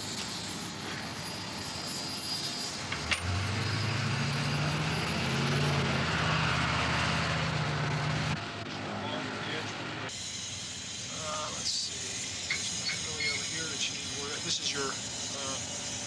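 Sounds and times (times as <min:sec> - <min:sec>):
low engine hum: 0:03.0 - 0:10.1
steady hiss: 0:10.1 - 0:16.0.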